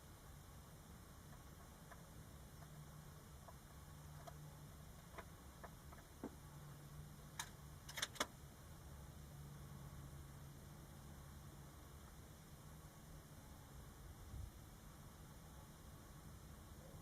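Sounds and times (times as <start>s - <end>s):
low steady hum: 0.0s - 17.0s
sharp clicks: 7.3s - 8.3s.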